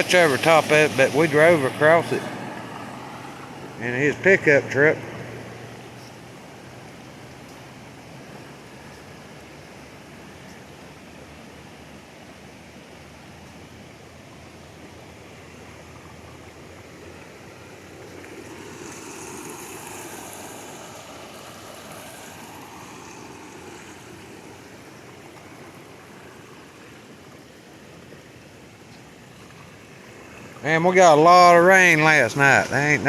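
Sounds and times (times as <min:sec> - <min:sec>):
river rushing: 0:00.0 - 0:33.0.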